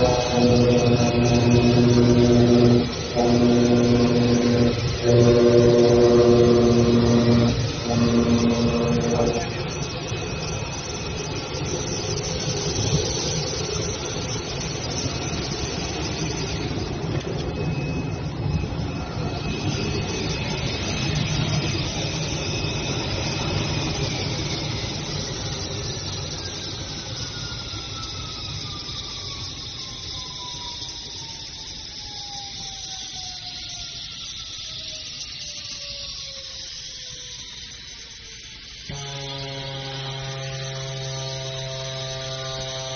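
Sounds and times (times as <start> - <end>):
router machine whining: 0.0 - 28.7, 38.1 - 42.9.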